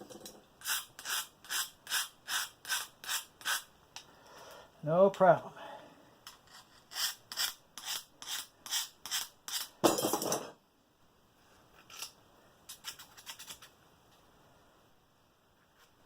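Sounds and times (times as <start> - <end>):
scissors scraping strokes: 0.6 - 3.7, 6.3 - 9.7, 11.8 - 13.7.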